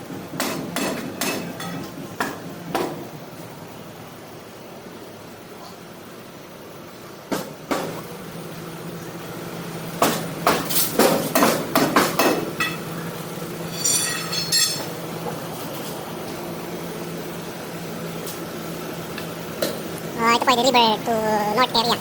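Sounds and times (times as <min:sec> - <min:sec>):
metal clanking: 0:13.6 - 0:15.0.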